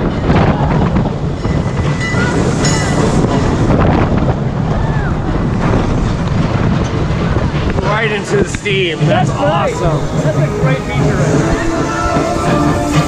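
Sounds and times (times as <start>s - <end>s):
roller coaster rumbling on track: 0.0s - 13.0s
wind buffeting microphone: 0.0s - 13.0s
faint voices: 7.7s - 13.0s.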